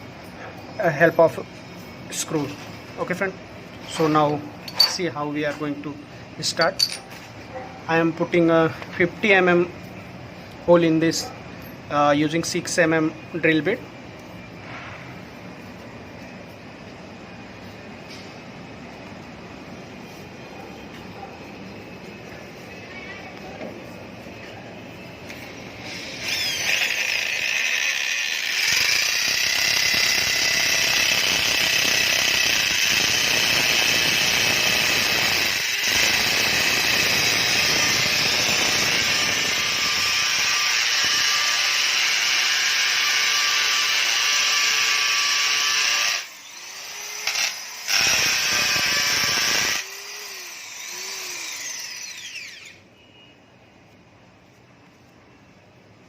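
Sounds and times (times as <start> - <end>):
electric drill boring into stone: 25.8 - 52.8.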